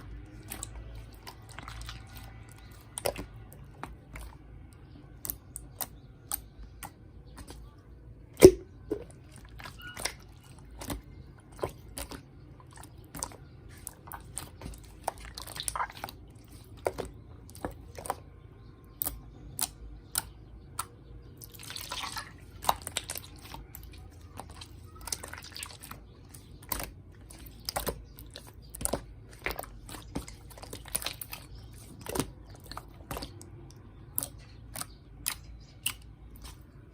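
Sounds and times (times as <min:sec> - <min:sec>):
slime squished by hand: 0:08.4 - 0:36.9.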